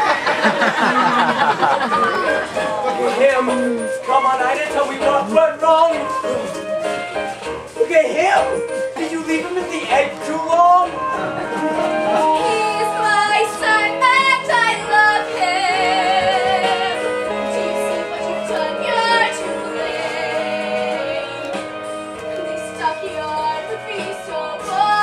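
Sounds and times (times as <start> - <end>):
instrumental accompaniment: 0.0 - 25.0
young voices singing: 12.1 - 25.0.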